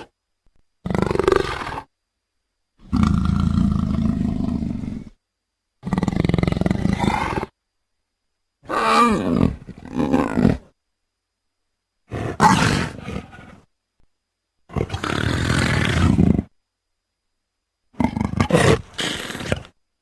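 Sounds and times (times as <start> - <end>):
leopard growl: 0.8 - 1.9, 2.8 - 5.2, 5.8 - 7.5, 8.6 - 10.7, 12.1 - 13.7, 14.7 - 16.5, 18.0 - 19.8.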